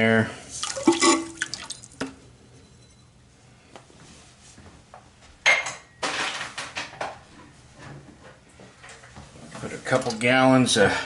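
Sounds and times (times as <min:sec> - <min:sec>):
cup rattling in toilet tank: 0:00.6 - 0:02.1
cup clinking on toilet tank: 0:00.8 - 0:02.2.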